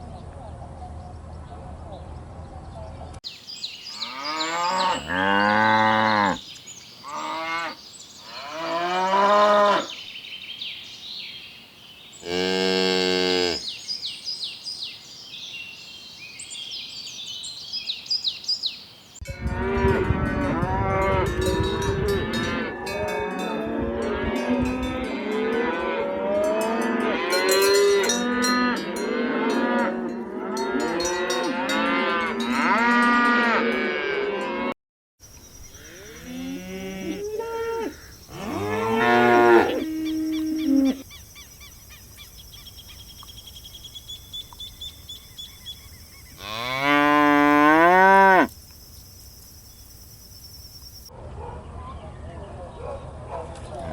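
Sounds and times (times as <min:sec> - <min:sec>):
cattle mooing: 0:04.0 - 0:06.4, 0:12.2 - 0:13.6, 0:36.2 - 0:41.0.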